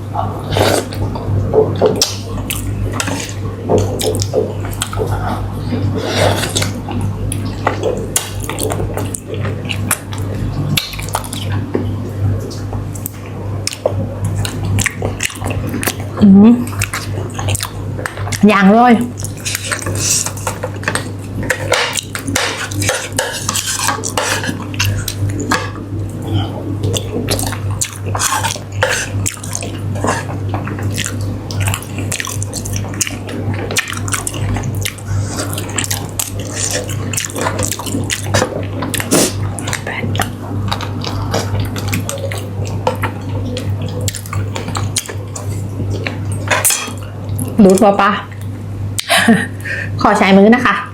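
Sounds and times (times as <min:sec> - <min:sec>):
spoon scraping a plate: 0:21.5 - 0:24.6.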